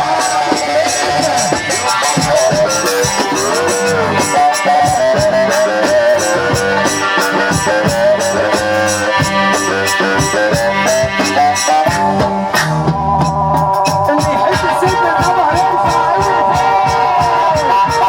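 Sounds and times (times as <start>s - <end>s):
pitch-bending lead melody: 0.0s - 18.0s
steady drum beat: 0.0s - 18.0s.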